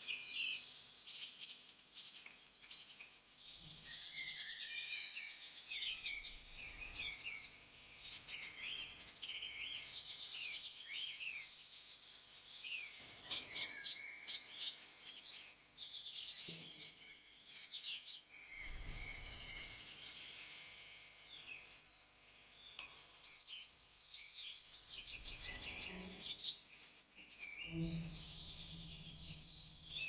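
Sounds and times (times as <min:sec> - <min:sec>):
birds chirping and trilling: 0:22.7 - 0:30.0.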